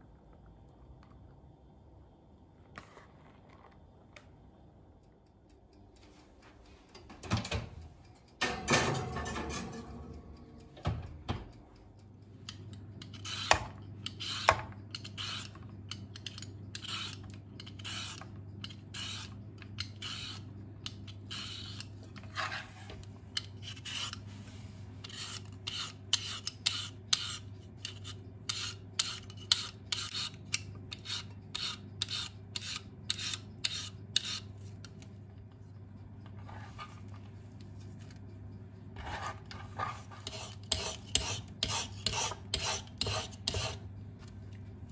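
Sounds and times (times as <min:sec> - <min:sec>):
food rasping on hand grater: 0:13.0 - 0:15.6, 0:16.3 - 0:22.6, 0:23.4 - 0:24.2, 0:39.0 - 0:43.8.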